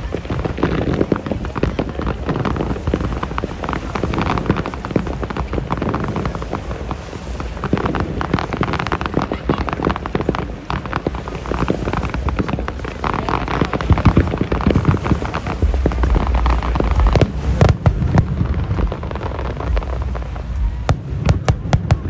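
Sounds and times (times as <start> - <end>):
fireworks crackling and popping: 0.0 - 22.0
low rumble of booms: 10.5 - 22.0.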